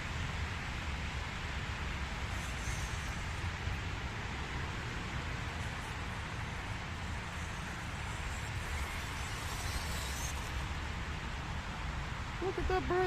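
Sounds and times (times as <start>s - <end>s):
fluttering wind rumble on microphone: 0.0s - 12.4s
toy truck electric motor: 1.7s - 11.0s.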